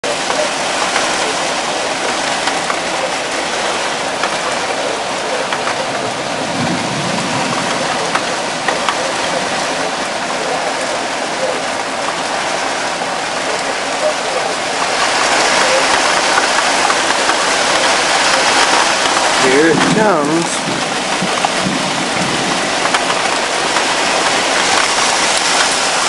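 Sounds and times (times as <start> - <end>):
heavy rain falling: 0.0 - 26.0
sharp drip clicks: 7.6 - 9.1, 15.4 - 20.6, 21.2 - 25.8.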